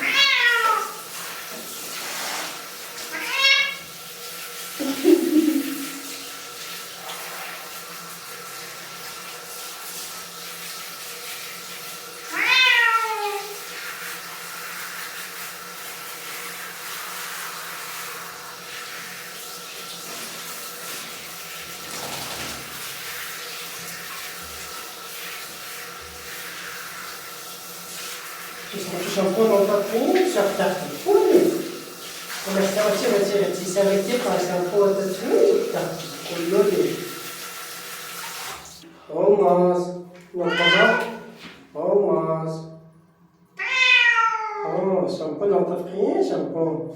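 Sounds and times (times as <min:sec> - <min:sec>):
cat meowing: 0:00.0 - 0:01.0, 0:03.1 - 0:03.8, 0:12.3 - 0:13.6, 0:40.4 - 0:41.3, 0:43.6 - 0:44.8.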